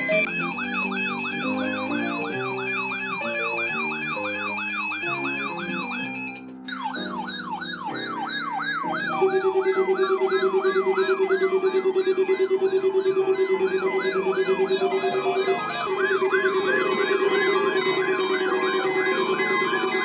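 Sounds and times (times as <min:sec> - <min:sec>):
electronic siren sweeping: 0:00.0 - 0:20.0
music: 0:00.0 - 0:20.0
rapidly pulsing low tone: 0:06.8 - 0:20.0.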